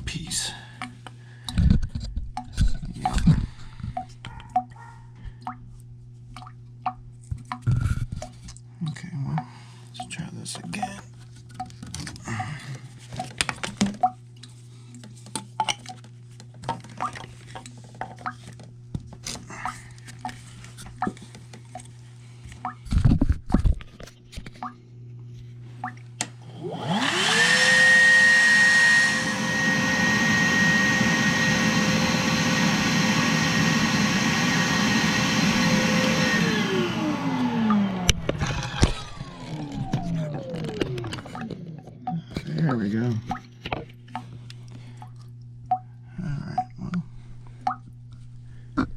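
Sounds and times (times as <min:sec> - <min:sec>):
shop vacuum whine: 0:26.4 - 0:41.7.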